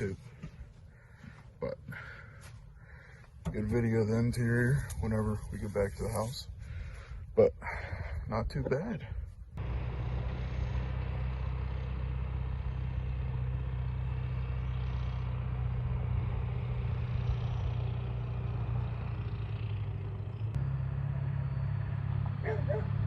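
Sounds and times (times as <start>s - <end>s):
vehicle engine idling: 9.6s - 23.0s.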